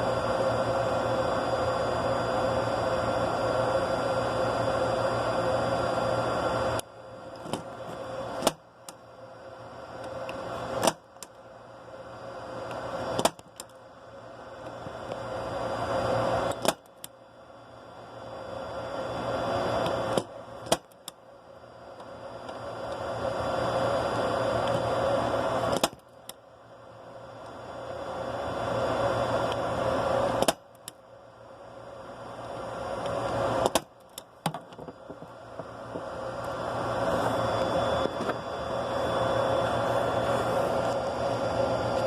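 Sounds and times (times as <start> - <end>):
steady room noise: 0.0 - 42.0.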